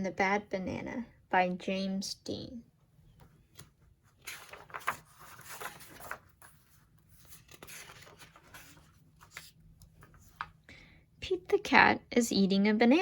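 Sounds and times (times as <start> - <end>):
book pages turning: 3.1 - 10.7.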